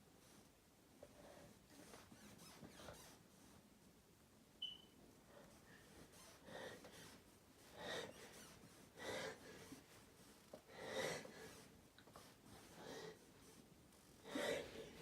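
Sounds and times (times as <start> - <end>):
person gasping breaths: 5.4 - 9.9, 10.6 - 11.6, 14.2 - 15.0.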